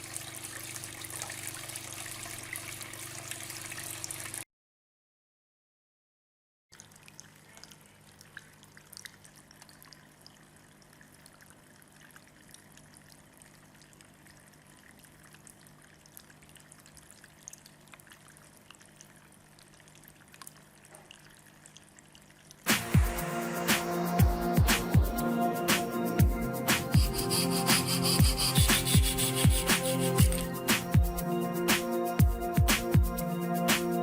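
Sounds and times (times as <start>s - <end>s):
water trickling in fountain: 0.0s - 4.4s, 6.7s - 25.4s, 28.3s - 31.6s
music: 22.7s - 34.0s.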